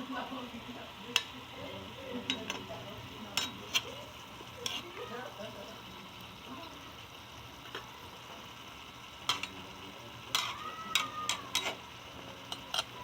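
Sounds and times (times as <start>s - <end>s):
utensil scraping in a pan: 1.0s - 6.0s, 7.6s - 8.5s, 9.2s - 13.0s.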